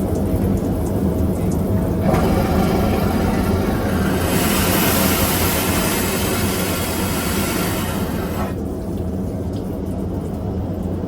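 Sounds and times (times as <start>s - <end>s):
low drone of aircraft cabin: 0.0s - 11.0s
vacuum toilet flushing: 1.8s - 8.6s.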